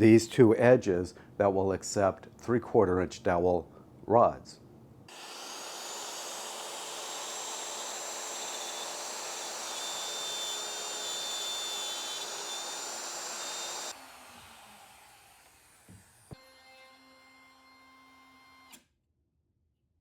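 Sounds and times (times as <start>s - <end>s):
router motor whining: 5.1s - 18.8s.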